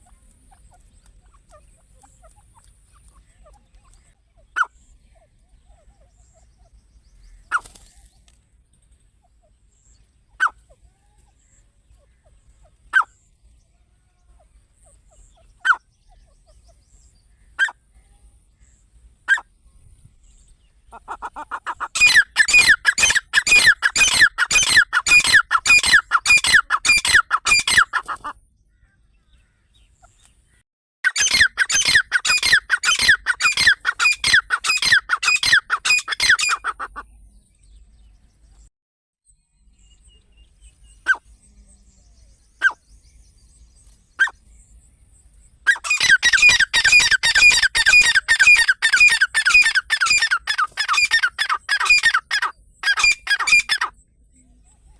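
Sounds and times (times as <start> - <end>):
francolin calling: 20.9 - 30.2, 45.6 - 54.0.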